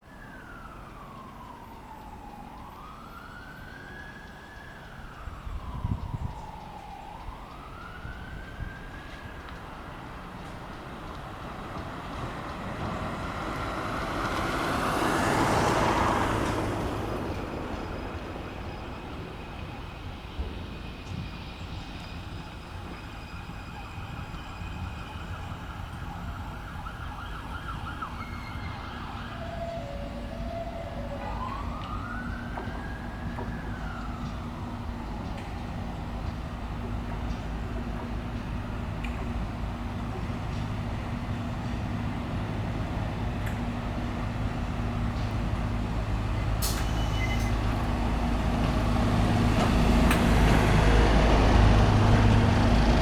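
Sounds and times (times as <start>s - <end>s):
rising and falling siren sweep: 0.0s - 53.0s
train rushing past: 9.0s - 53.0s.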